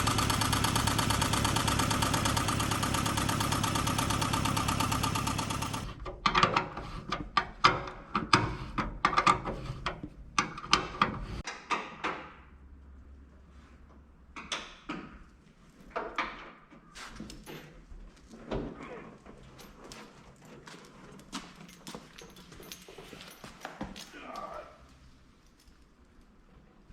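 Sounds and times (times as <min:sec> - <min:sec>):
engine running with knocking: 0:00.0 - 0:06.0
sharp knocks and clicks: 0:05.4 - 0:12.4.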